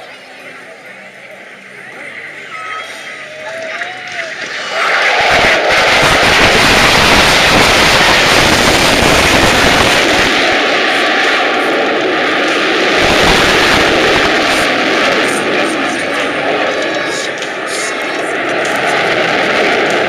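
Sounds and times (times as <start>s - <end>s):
loud crackling jet noise: 3.5s - 20.0s.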